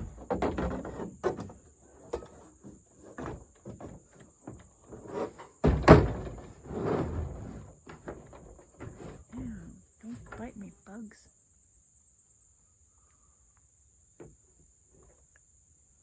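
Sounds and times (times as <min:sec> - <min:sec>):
objects knocking and rustling: 0:00.0 - 0:10.6.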